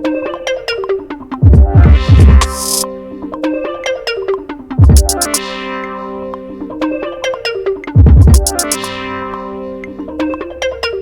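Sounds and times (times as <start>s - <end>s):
electronic beat with deep bass hits: 1.4s - 2.8s, 4.8s - 6.5s, 7.8s - 10.0s
burst of high hiss: 2.4s - 2.8s.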